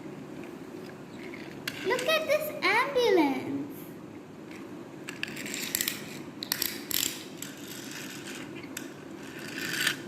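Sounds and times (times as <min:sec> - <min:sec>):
toy car gears whirring and ratcheting: 0:05.2 - 0:08.5, 0:09.2 - 0:10.0.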